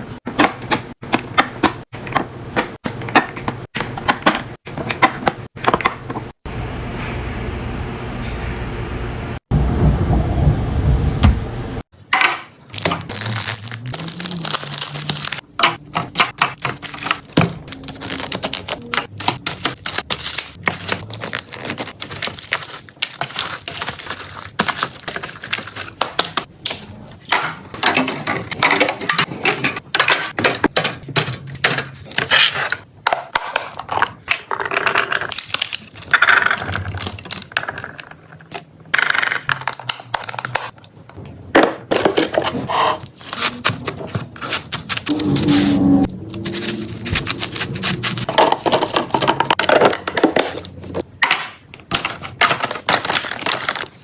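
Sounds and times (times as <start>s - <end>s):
low rumbling noise: 6.5s - 11.8s, 45.1s - 49.6s
plastic food packaging rustling: 12.7s - 41.0s, 41.9s - 45.3s, 46.3s - 54.0s.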